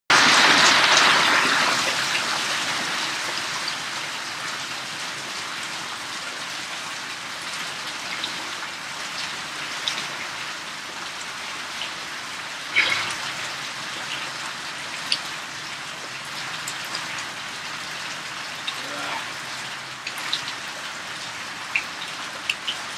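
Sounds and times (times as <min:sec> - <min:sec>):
rain pouring: 0:00.1 - 0:22.9
water splash: 0:12.7 - 0:13.5
water drips: 0:16.0 - 0:22.9.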